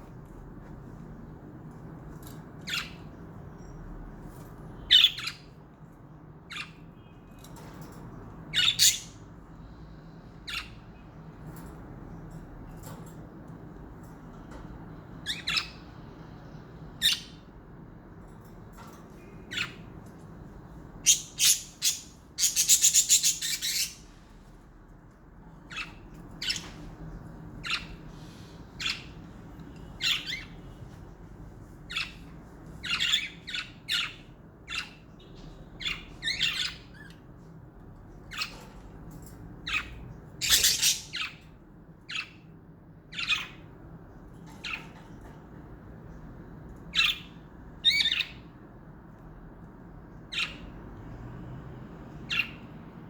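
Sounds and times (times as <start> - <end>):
budgerigars chirping and squawking: 2.2 - 3.4, 4.8 - 5.6, 8.5 - 9.3, 10.4 - 11.0, 15.2 - 16.0, 17.0 - 17.5, 19.4 - 20.0, 20.9 - 24.1, 25.7 - 26.8, 27.5 - 29.3, 30.0 - 30.6, 31.9 - 37.2, 39.6 - 42.5, 43.1 - 43.8, 44.5 - 45.1, 46.8 - 48.5, 50.3 - 50.8, 52.3 - 52.7
budgerigars chattering rapidly: 21.1 - 24.0, 39.7 - 41.3.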